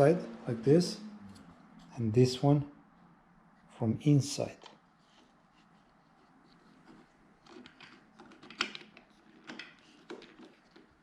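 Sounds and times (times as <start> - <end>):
plastic parts clicking: 6.6 - 11.0.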